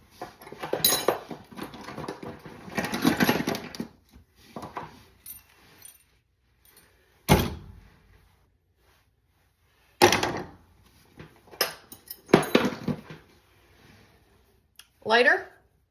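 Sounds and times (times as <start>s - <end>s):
metal tools clinking: 0.5s - 2.2s, 5.2s - 6.9s, 11.6s - 13.0s.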